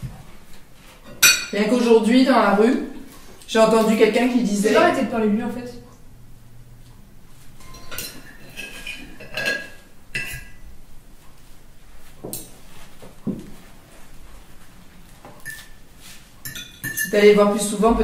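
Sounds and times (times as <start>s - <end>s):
cutlery clinking on plates: 1.0s - 1.6s, 7.6s - 10.6s, 15.4s - 15.8s, 16.4s - 17.2s.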